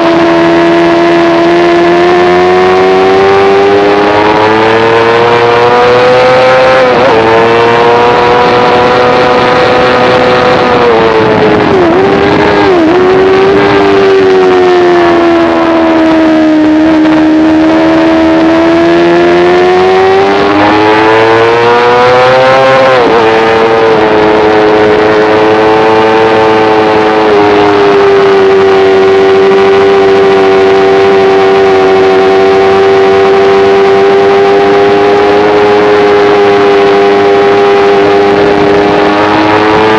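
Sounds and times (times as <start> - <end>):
motorcycle engine high revs: 0.0 - 39.9.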